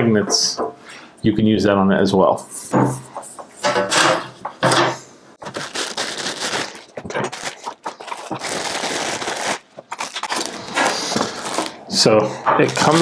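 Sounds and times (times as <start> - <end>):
packaging crinkling and rustling: 5.4 - 12.0, 12.6 - 13.0.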